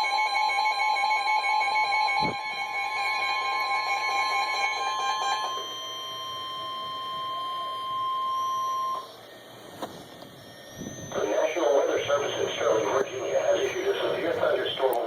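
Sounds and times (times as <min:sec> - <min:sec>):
overlaid electronic tones: 0:01.9 - 0:15.0
faint radio hiss: 0:09.2 - 0:15.0.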